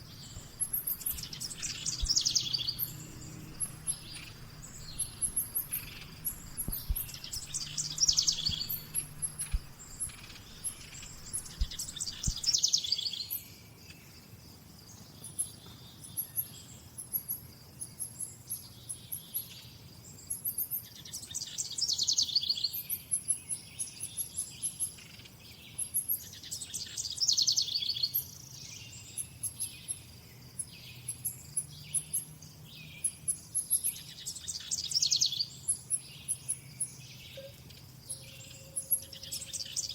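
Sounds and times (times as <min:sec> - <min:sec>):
thin high bird chirps: 0:00.0 - 0:13.4, 0:32.9 - 0:39.9.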